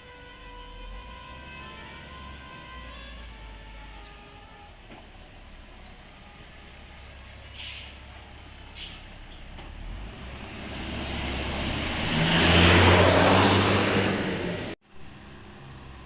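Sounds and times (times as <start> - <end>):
heavy vehicle driving past: 5.3 - 16.0.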